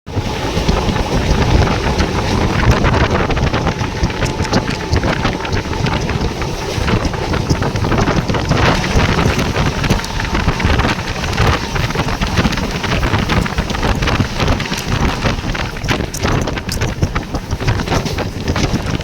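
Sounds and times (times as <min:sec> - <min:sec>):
train running: 0:00.1 - 0:19.0
wind buffeting microphone: 0:00.1 - 0:19.0
small clicks and rattles: 0:00.2 - 0:19.0.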